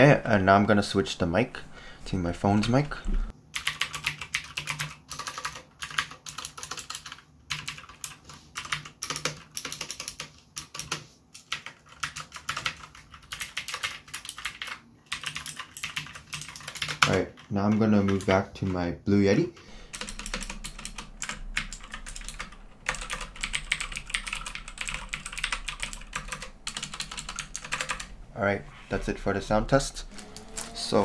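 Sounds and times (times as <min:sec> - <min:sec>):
mechanical keyboard typing: 0:03.6 - 0:18.4, 0:19.9 - 0:28.1.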